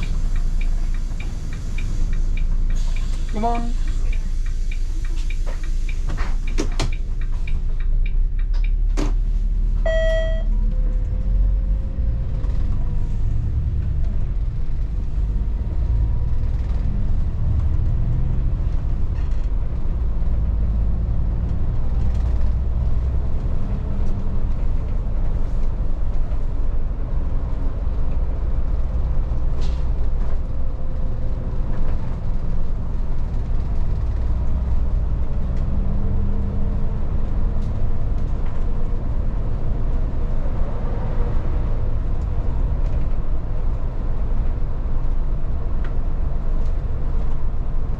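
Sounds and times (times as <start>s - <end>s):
bus engine and road rumble: 0.0s - 47.9s
short electronic beep: 9.9s - 10.5s.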